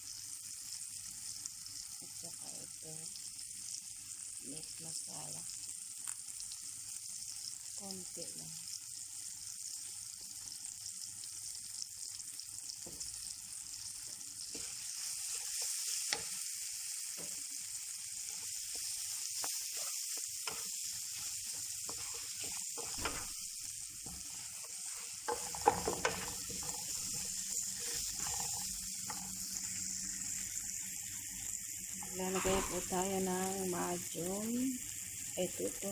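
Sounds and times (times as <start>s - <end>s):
vegetables sizzling in a pan: 0.0s - 35.9s
utensil scraping a pan: 21.5s - 23.4s, 24.0s - 29.4s.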